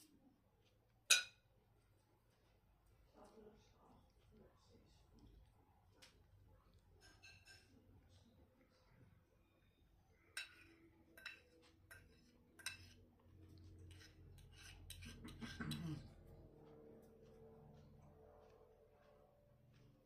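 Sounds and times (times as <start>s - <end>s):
cutlery clinking against plate: 1.1s - 1.4s, 7.0s - 7.9s, 10.3s - 13.0s, 13.8s - 16.2s.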